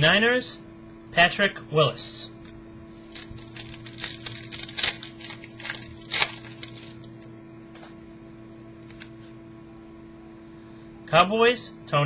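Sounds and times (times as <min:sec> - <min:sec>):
low electrical hum: 0:00.0 - 0:12.0
trading cards clicking and rustling: 0:03.0 - 0:08.0.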